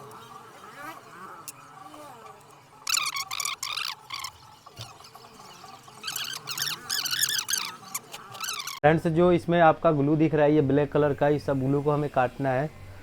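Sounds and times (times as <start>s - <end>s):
high-pitched chirping calls: 2.9s - 4.4s, 6.0s - 8.8s.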